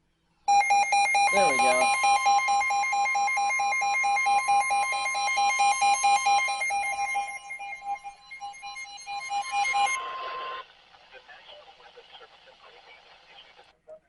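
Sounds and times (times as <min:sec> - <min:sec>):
rapid alert beeping: 0:00.5 - 0:10.0
steady high alarm tone: 0:00.5 - 0:10.6.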